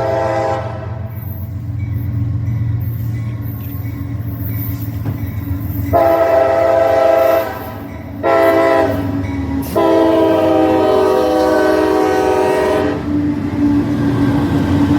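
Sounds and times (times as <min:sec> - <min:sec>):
locomotive air horn blasts: 0:00.0 - 0:01.1, 0:05.9 - 0:13.0
train rumbling past: 0:00.0 - 0:14.9.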